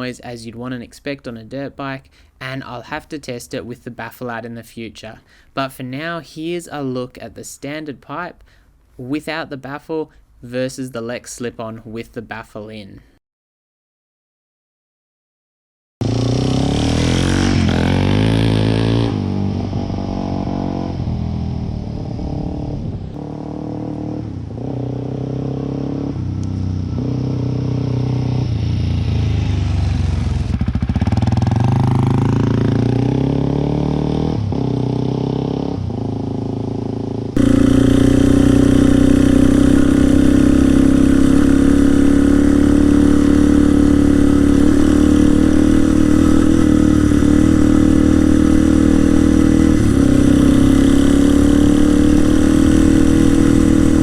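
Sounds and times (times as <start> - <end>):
dirt bike engine revving: 16.0 - 54.0.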